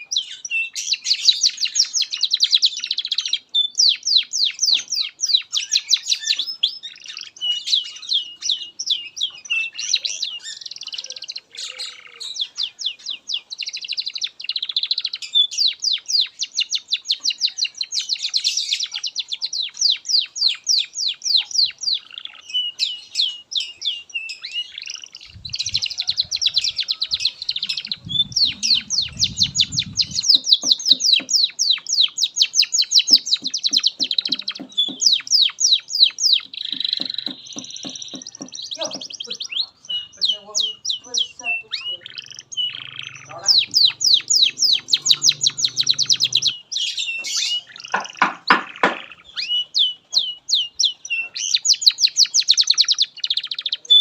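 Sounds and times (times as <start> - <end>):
canary singing trills: 0.0 - 54.0
low rumbling noise: 27.5 - 30.3.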